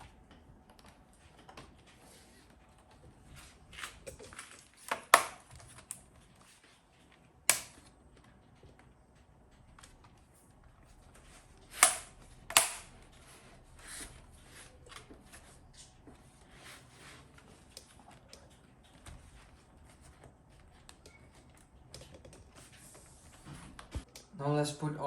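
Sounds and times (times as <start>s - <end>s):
laptop parts snapping into place: 4.8s - 6.0s, 7.5s - 7.8s, 11.8s - 12.9s
sharp clicks: 11.8s - 12.9s.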